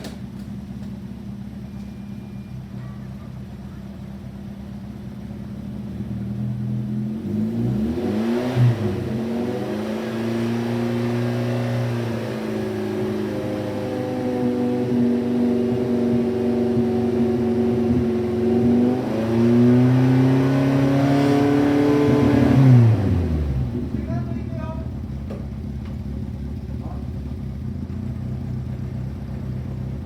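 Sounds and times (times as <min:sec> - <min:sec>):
car engine running and revving: 0:00.0 - 0:30.0.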